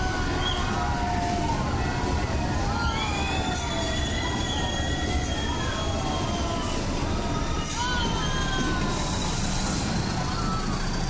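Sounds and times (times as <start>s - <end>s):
train running with low rumble: 0.0s - 11.0s
steel wheels squealing: 2.8s - 11.0s.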